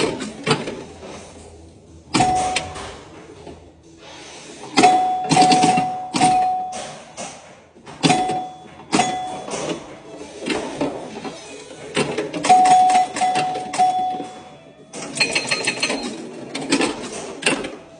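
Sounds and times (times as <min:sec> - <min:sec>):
pinball scoring chime: 0:02.1 - 0:03.1, 0:04.8 - 0:07.2, 0:08.0 - 0:10.0, 0:12.2 - 0:17.0
pinball machine clacks: 0:02.1 - 0:03.2, 0:04.7 - 0:17.9.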